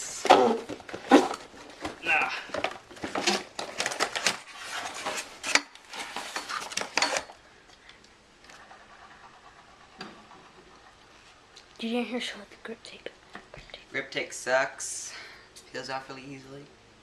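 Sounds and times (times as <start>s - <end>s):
packaging rustling and crackling: 0.6s - 7.4s.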